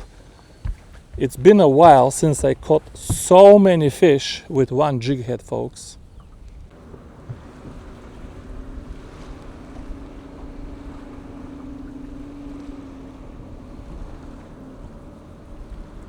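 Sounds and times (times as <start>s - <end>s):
motorboat engine droning: 0.0s - 16.0s
wind on microphone: 6.0s - 16.0s.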